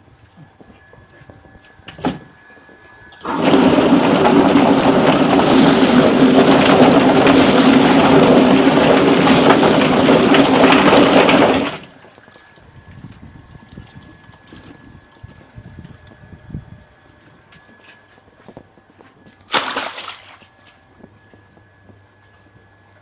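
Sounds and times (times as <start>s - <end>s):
machine motor hum: 3.2s - 11.9s
water rushing and splashing: 3.2s - 11.9s.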